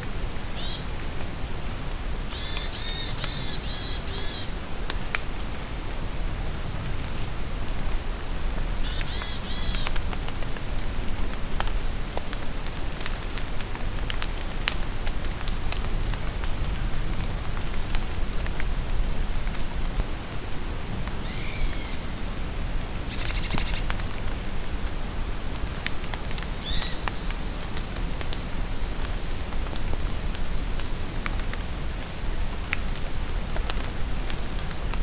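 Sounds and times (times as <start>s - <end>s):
steady rain in forest: 0.0s - 35.0s
birds calling: 2.2s - 4.6s, 8.8s - 10.0s, 21.2s - 22.3s
raindrops ticking: 8.8s - 20.0s, 23.1s - 35.0s.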